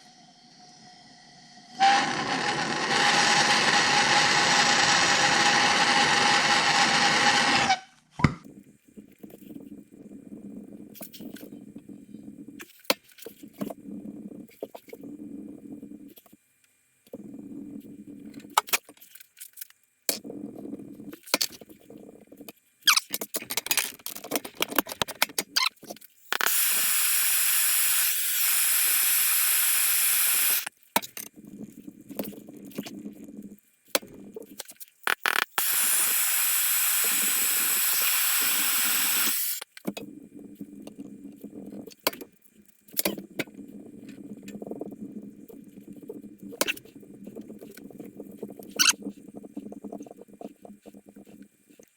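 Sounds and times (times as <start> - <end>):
pressurized gas hissing: 0.0 - 7.8, 26.3 - 30.7, 35.1 - 39.6.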